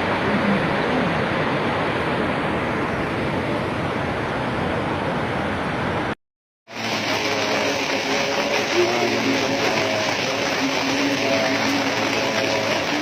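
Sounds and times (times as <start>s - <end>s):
heavy rain pouring: 6.7s - 13.0s.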